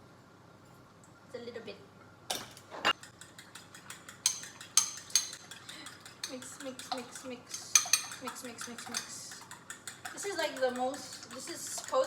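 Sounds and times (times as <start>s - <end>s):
fork beating eggs in a bowl: 2.9s - 12.0s
utensil clinking against bowl: 2.9s - 12.0s.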